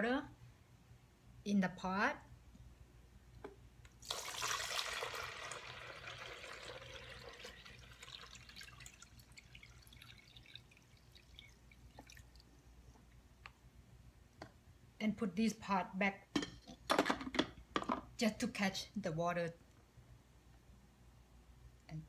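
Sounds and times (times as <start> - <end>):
water pouring into coffee maker: 4.0 - 12.5.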